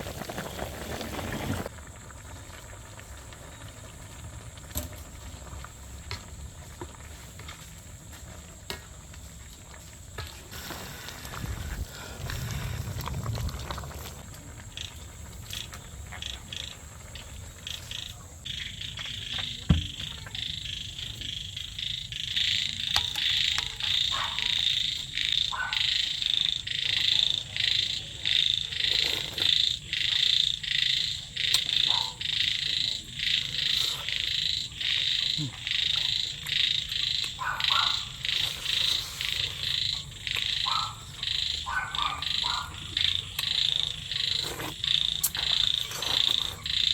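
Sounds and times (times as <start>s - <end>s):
frogs calling: 14.6s - 46.9s.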